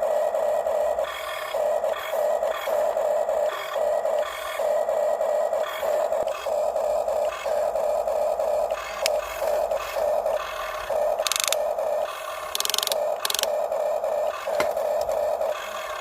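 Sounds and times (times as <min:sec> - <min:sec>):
electric gear motors whining: 0:00.0 - 0:16.0
sharp click: 0:11.2 - 0:11.6, 0:12.6 - 0:13.5.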